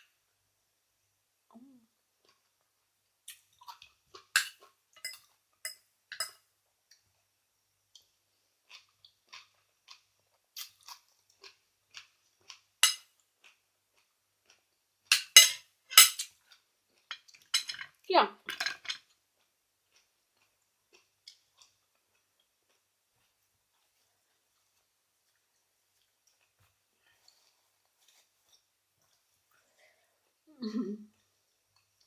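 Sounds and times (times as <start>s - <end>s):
person chewing: 8.0s - 12.7s, 19.4s - 29.4s.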